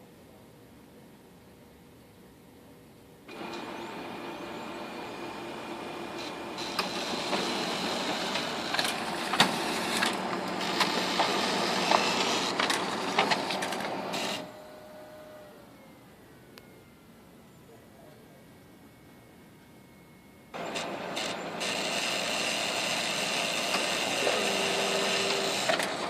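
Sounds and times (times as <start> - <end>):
computer grinding whir: 3.3 - 15.9, 20.5 - 26.0.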